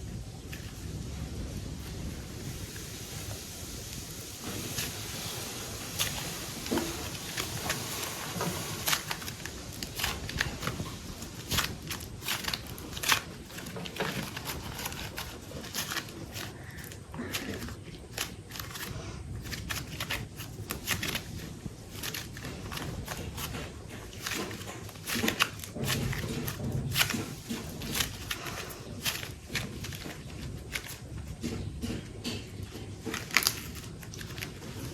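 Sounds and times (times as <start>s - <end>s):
hands working modelling clay: 0.0s - 34.9s
steady low hiss: 0.0s - 34.9s.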